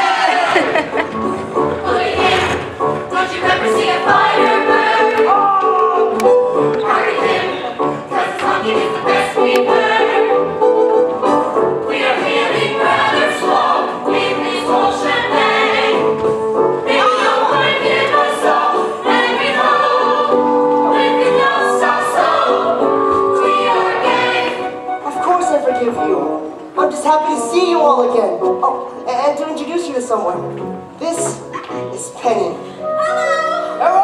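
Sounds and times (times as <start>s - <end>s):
chorus singing: 0.0s - 25.2s
instrumental accompaniment: 0.6s - 34.0s.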